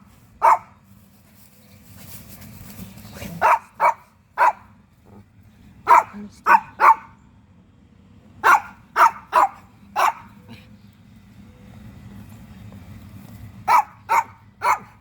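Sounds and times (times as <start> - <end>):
dog barking: 0.4 - 0.8, 3.4 - 4.7, 5.8 - 7.2, 8.4 - 10.4, 13.6 - 15.0.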